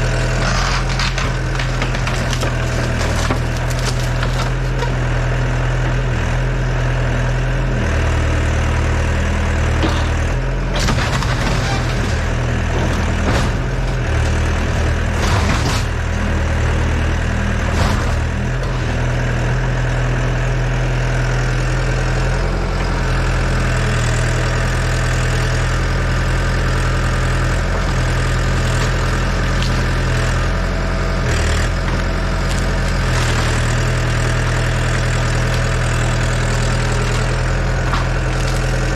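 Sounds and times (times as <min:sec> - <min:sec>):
excavator diesel engine running: 0:00.0 - 0:38.9
wood breaking cracks: 0:00.1 - 0:04.9, 0:32.3 - 0:38.9.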